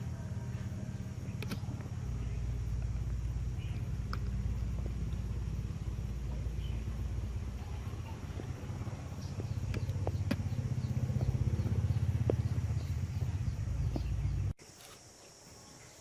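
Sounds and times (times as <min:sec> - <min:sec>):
fast-pulsing engine rumble: 0:00.0 - 0:14.6
sharp clicks: 0:01.3 - 0:01.9.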